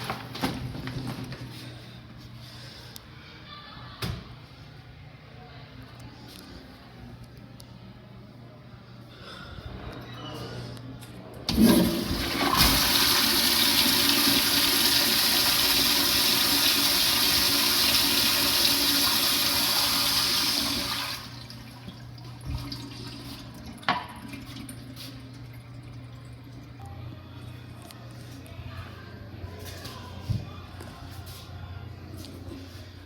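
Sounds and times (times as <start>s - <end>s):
toilet flushing: 11.5s - 26.7s.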